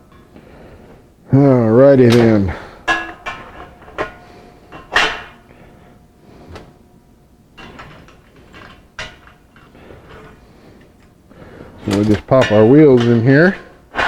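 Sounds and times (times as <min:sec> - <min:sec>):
metal scaffold parts clanking: 0:01.7 - 0:05.6, 0:07.6 - 0:10.4, 0:11.8 - 0:14.0.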